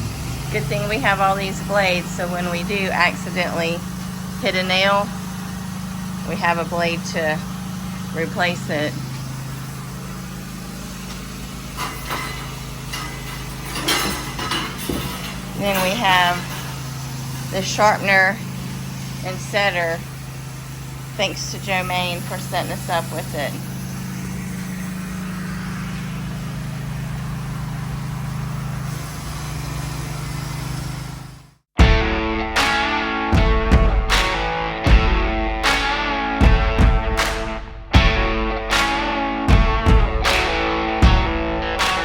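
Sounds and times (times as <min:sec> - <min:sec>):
engine idling with low hum: 0:00.0 - 0:31.6
short knocks and clatters: 0:11.8 - 0:15.6.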